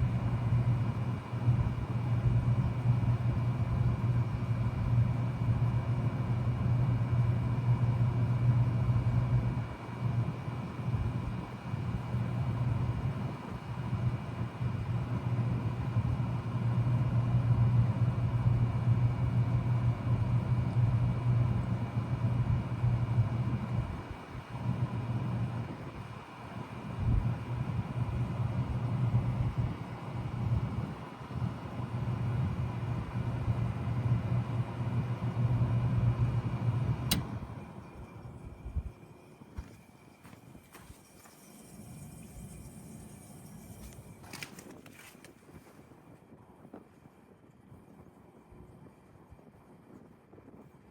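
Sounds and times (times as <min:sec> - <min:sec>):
heat pump humming: 0:00.0 - 0:45.8
heat pump fan whooshing: 0:00.0 - 0:50.9
heat pump switch click: 0:36.9 - 0:37.5.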